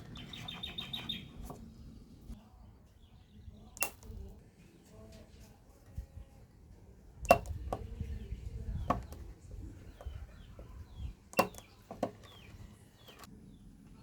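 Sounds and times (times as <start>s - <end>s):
spot welder snaps: 3.8s - 4.2s.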